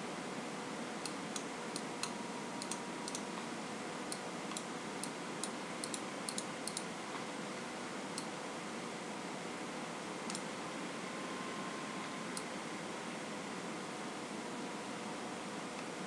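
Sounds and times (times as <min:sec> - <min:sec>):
computer mouse clicking: 0:01.0 - 0:03.2, 0:04.1 - 0:06.9, 0:10.3 - 0:10.5.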